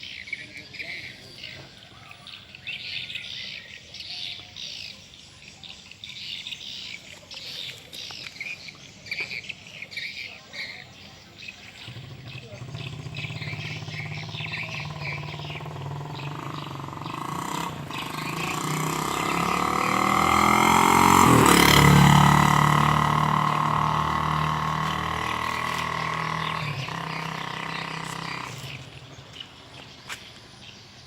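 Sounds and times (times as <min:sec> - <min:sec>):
vehicle engine passing by: 0:11.7 - 0:30.7.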